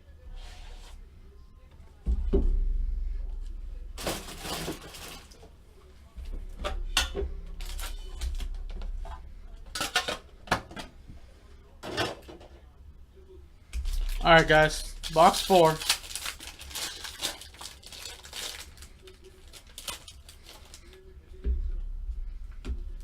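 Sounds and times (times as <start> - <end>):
packaging rustling: 13.9 - 21.0.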